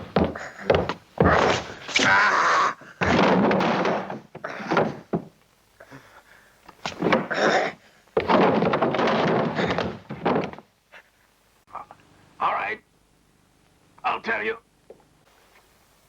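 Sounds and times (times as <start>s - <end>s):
thudding punches: 3.0s - 5.3s.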